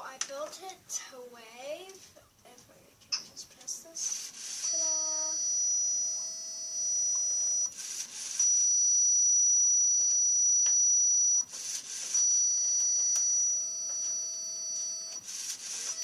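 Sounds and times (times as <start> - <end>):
high-pitched electronic alarm tone: 4.4 - 16.0.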